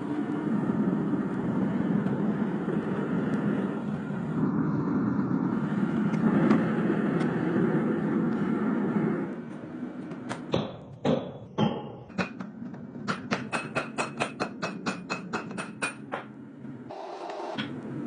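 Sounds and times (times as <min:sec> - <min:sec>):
steady rushing noise: 0:00.0 - 0:18.0
hammer striking steel: 0:10.5 - 0:16.3.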